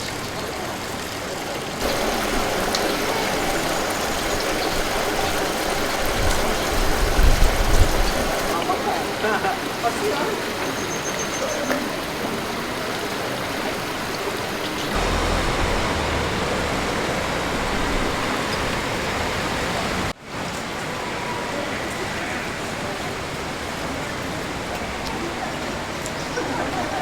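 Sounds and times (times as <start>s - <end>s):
water rushing and cascading: 0.0s - 21.0s
low rumble: 14.9s - 20.1s.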